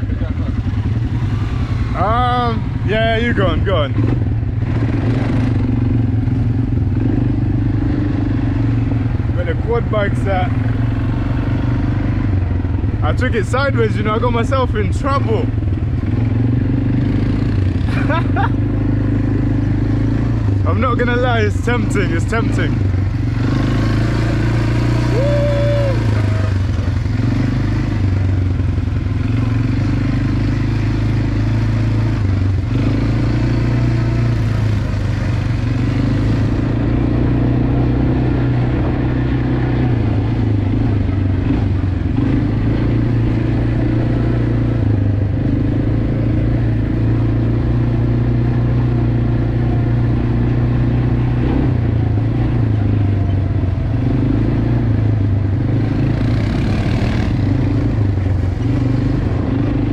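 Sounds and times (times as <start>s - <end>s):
quad bike engine running: 0.0s - 59.9s.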